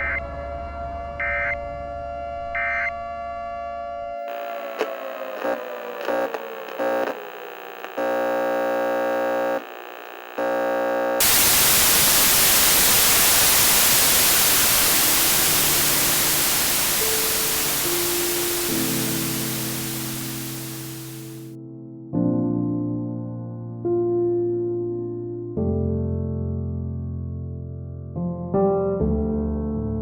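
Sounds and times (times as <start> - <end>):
television static hiss: 4.3 - 10.3, 11.2 - 21.5
buzzy electronic tone sliding down: 11.2 - 21.5
faint steady tones: 11.2 - 21.5.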